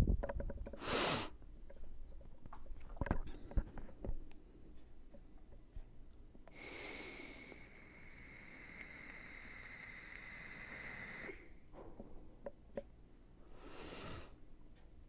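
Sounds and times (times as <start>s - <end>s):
steady hiss with high whistle: 7.6s - 11.6s.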